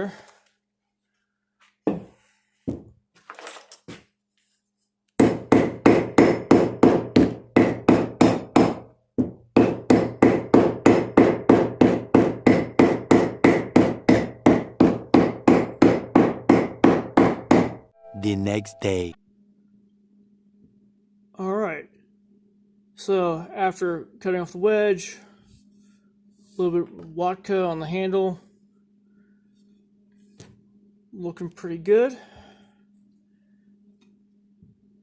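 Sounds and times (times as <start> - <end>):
ringing hammer blows: 18.0 - 19.2.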